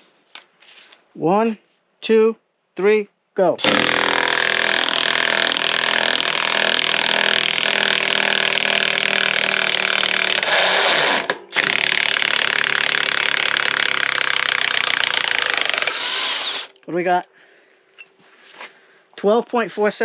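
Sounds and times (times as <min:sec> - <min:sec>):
impact wrench hammering: 0:03.6 - 0:16.2.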